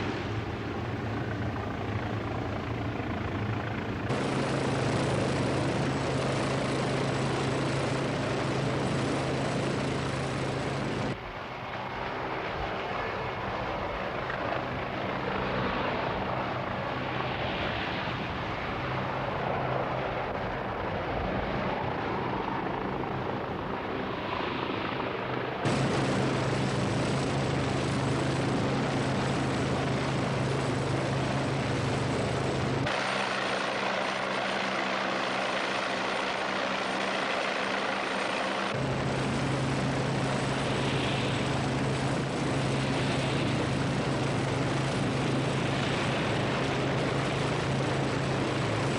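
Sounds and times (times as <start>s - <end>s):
helicopter engine and rotor: 0.0s - 48.9s
dull rushing noise: 38.5s - 48.9s.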